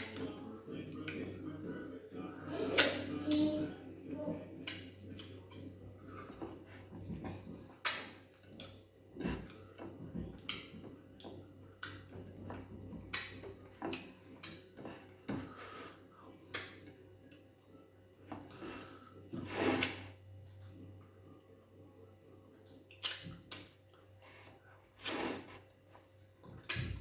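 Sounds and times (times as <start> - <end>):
steady low hum: 0.0 - 27.0
wet chewing mouth clicks: 10.4 - 14.6, 22.9 - 23.8.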